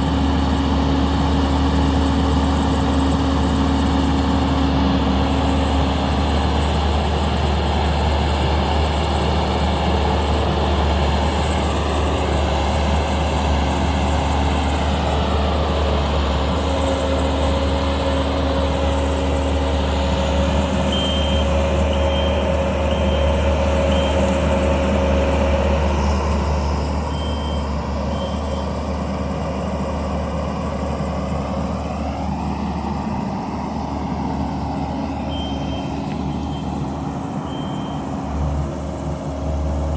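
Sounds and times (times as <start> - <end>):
diesel engine running: 0.0 - 39.9
reversing alarm beeping: 20.3 - 29.0, 34.5 - 38.8.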